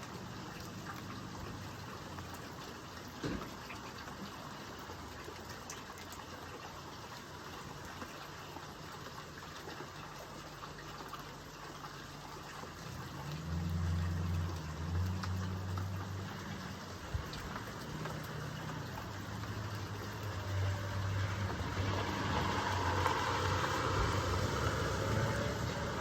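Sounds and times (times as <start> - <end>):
rain hiss: 0.0 - 5.5, 6.8 - 26.0
low motor rumble: 12.7 - 26.0.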